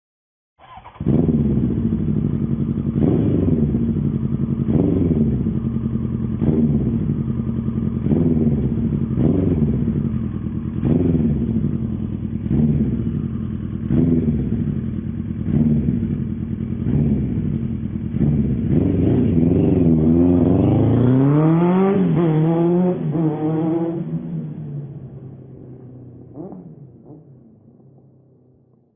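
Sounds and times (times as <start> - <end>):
engine throttle blips: 0.6 - 28.1
motorcycle accelerating away: 0.6 - 28.7
motorcycle engine starting and idling: 0.6 - 28.9.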